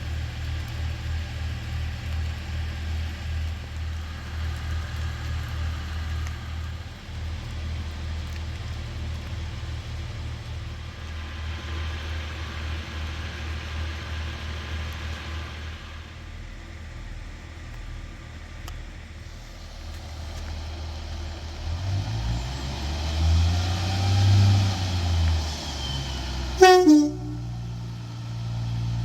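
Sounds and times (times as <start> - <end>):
hiss: 0.1 - 16.3, 19.2 - 29.0
diesel engine idling: 24.8 - 29.0.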